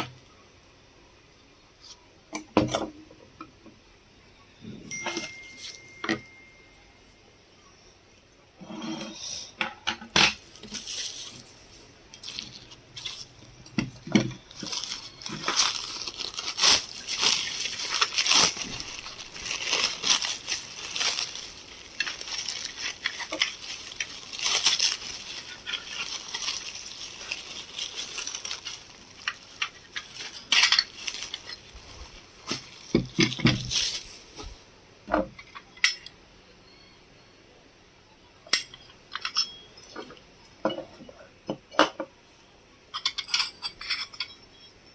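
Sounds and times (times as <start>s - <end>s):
dishes and utensils clinking: 4.7s - 6.6s, 38.5s - 42.1s, 42.9s - 44.9s
rustling: 10.3s - 34.7s.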